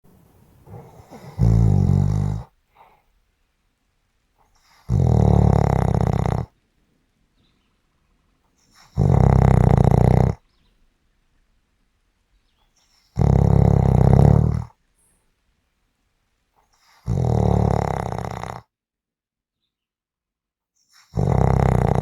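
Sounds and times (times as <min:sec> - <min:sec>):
loud rattling snores: 0:00.6 - 0:02.5, 0:04.7 - 0:06.6, 0:08.7 - 0:10.4, 0:13.2 - 0:14.8, 0:16.9 - 0:18.7, 0:21.1 - 0:22.0.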